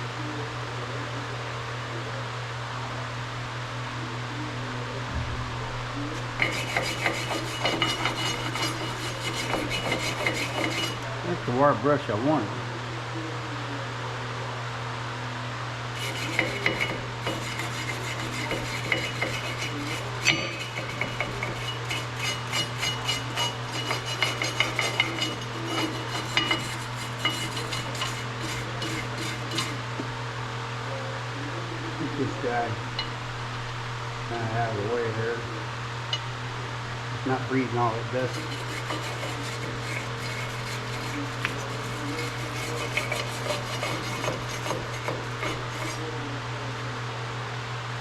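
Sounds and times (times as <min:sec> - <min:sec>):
steady low hum: 0:00.0 - 0:48.0
wire brush scraping rusty metal: 0:06.2 - 0:11.1, 0:16.0 - 0:29.9, 0:38.2 - 0:46.1.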